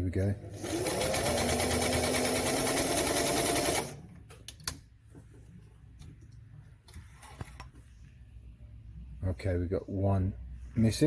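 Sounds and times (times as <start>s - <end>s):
sewing machine stitching: 0.5s - 4.0s.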